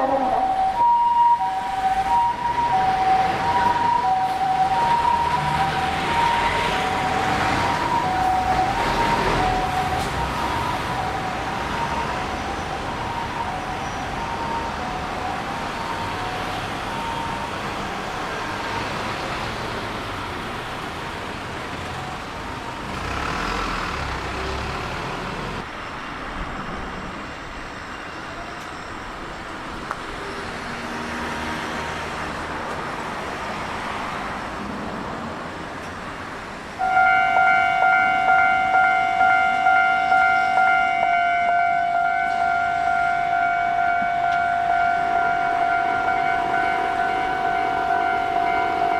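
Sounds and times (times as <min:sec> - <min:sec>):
two-tone crossing alarm: 0:00.0 - 0:19.1, 0:36.8 - 0:48.9
street and traffic noise: 0:00.0 - 0:48.9
level-crossing alarm clanging: 0:00.3 - 0:19.0, 0:36.8 - 0:48.9.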